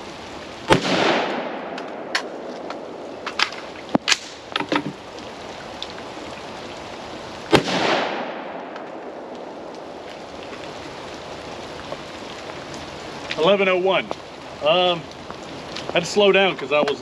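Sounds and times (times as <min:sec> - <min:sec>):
rain hissing: 0:00.0 - 0:17.0
rifle shot: 0:00.7 - 0:02.3, 0:07.5 - 0:08.9.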